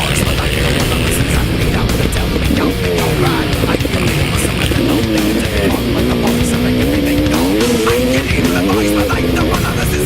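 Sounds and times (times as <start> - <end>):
heavy metal music: 0.0 - 10.0
motorcycle engines revving: 0.0 - 10.0.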